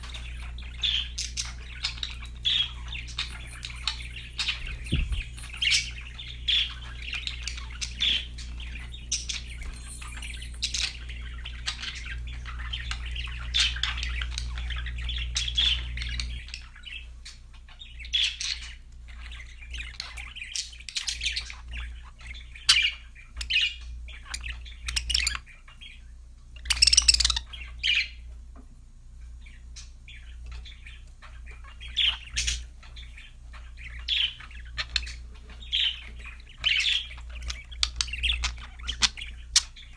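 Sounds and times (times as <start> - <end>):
budgerigars chirping: 0.0 - 28.4, 29.2 - 39.9
low hum: 4.4 - 6.2
bird squawk: 26.6 - 28.2.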